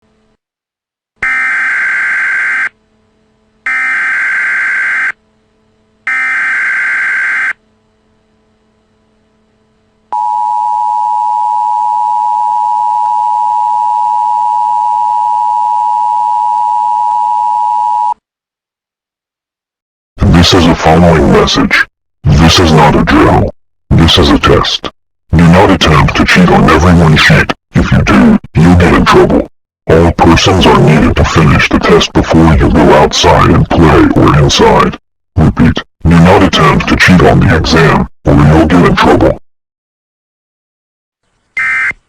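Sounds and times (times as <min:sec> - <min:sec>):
harsh digital data squawk: 0:01.2 - 0:02.8, 0:03.7 - 0:05.2, 0:06.1 - 0:07.6, 0:41.6 - 0:42.0.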